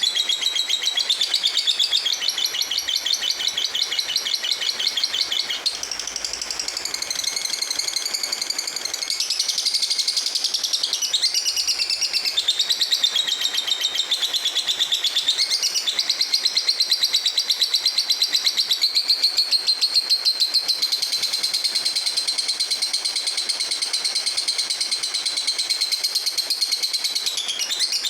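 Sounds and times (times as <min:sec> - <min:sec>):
bird chattering trill: 0:00.0 - 0:07.5.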